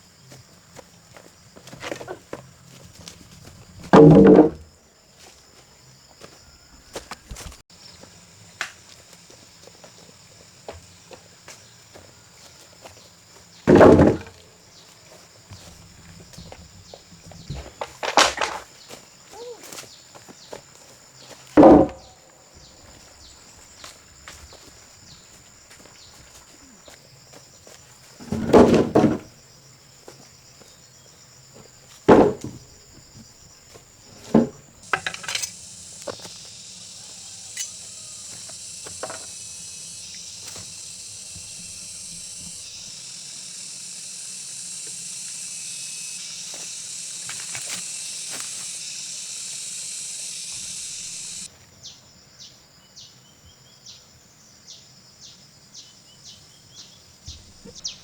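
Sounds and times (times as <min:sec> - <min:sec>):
high insect drone: 0:00.0 - 0:58.0
loud knocks: 0:03.8 - 0:04.7, 0:13.7 - 0:14.3, 0:21.6 - 0:22.1, 0:32.1 - 0:32.7
faint quick insect chirps: 0:29.2 - 0:58.0.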